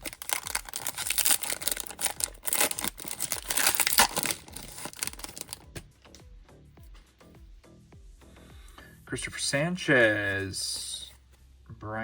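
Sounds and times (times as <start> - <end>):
foil wrapper crinkling and tearing: 0.0 - 5.7.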